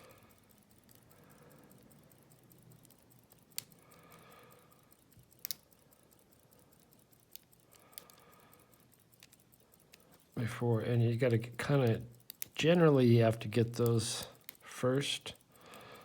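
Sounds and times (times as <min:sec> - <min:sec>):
lock pick metallic clicks: 0:00.0 - 0:10.3, 0:12.0 - 0:12.6.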